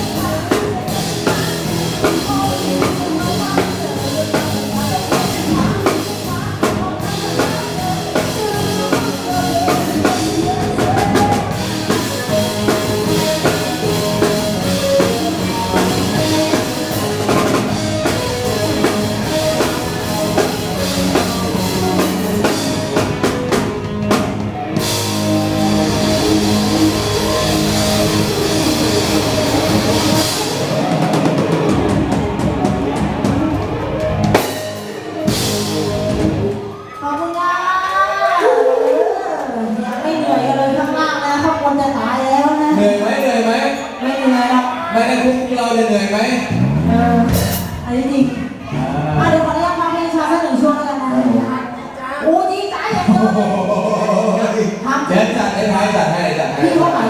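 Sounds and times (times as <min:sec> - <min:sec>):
drum kit beat: 0:00.0 - 0:37.0, 0:46.4 - 0:49.8
live pop band playing: 0:00.0 - 0:37.1, 0:41.3 - 0:51.9.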